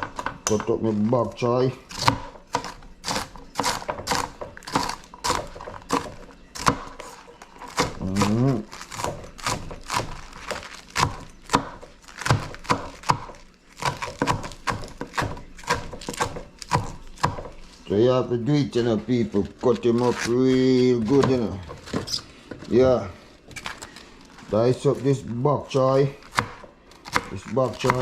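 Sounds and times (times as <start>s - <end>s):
knife chopping on cutting board: 1.9s - 17.6s, 19.6s - 22.7s, 26.2s - 28.0s.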